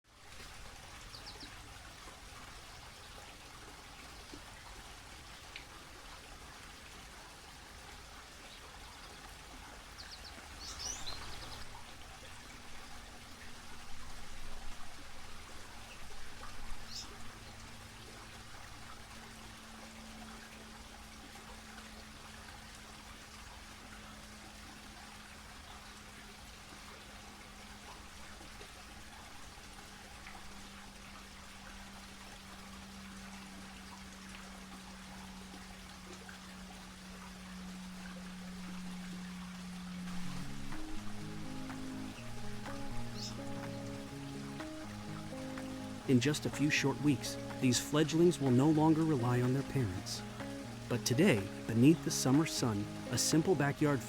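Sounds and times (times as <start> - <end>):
water fountain trickling: 0.1 - 54.0
low steady hum: 29.1 - 54.0
high bird chirps: 42.9 - 44.0.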